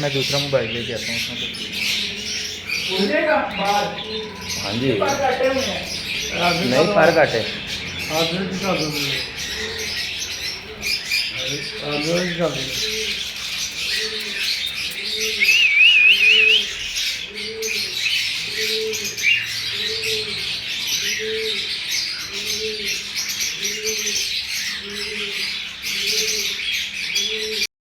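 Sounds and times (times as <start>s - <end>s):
bird cooing: 0.0s - 27.7s
small birds chirping: 0.0s - 27.7s
short wavering whistle: 15.5s - 16.6s.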